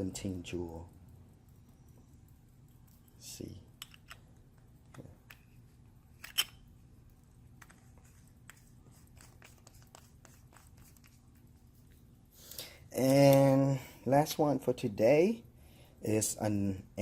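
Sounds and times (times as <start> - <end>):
pocket watches clicking: 0.0 - 7.3.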